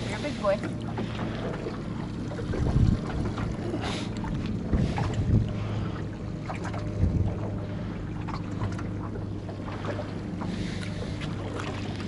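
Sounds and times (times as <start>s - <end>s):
boat motor humming: 0.0s - 12.0s
wind and water noise: 0.0s - 12.0s.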